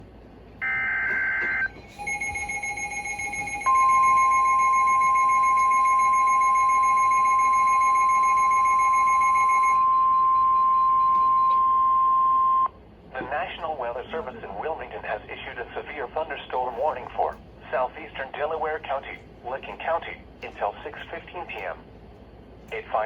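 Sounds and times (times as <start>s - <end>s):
steady single-pitch alarm tone: 0.6s - 12.7s
two-pitch alert tone: 0.6s - 12.7s.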